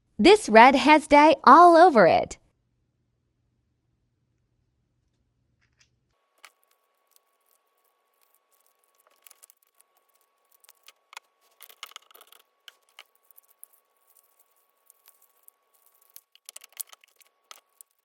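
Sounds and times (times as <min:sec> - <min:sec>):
slime kneaded by hand: 0:06.4 - 0:18.0.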